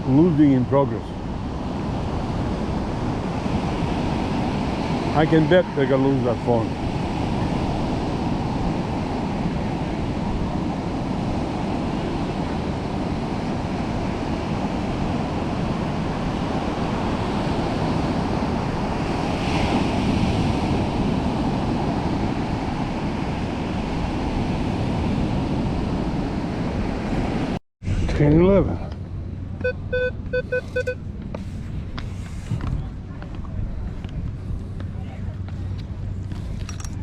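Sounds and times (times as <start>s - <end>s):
ocean surf washing on beach: 0.0s - 28.4s
wind buffeting microphone: 0.0s - 37.0s.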